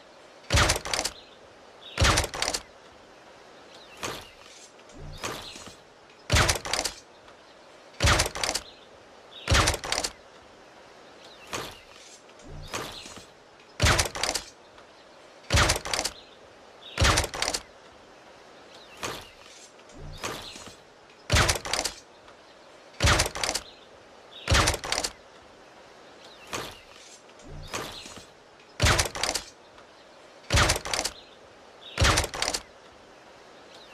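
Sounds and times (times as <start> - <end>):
air rifle shots: 0.5 - 1.2, 2.0 - 2.6, 6.3 - 7.0, 8.0 - 8.7, 9.5 - 10.2, 13.8 - 14.5, 15.5 - 16.2, 17.0 - 17.6, 21.3 - 22.0, 23.0 - 23.7, 24.5 - 25.2, 28.8 - 29.5, 30.5 - 31.2, 32.0 - 32.7.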